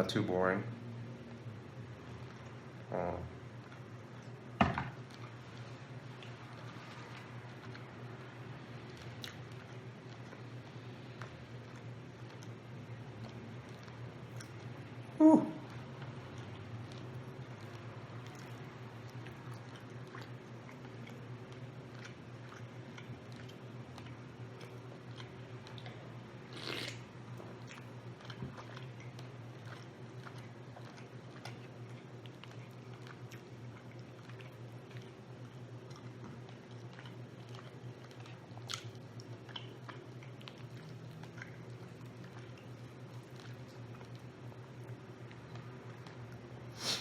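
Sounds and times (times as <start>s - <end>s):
steady low hum: 0.0s - 46.8s
chewing and biting chicken: 5.0s - 47.0s
wet mouth clicks: 24.6s - 27.1s.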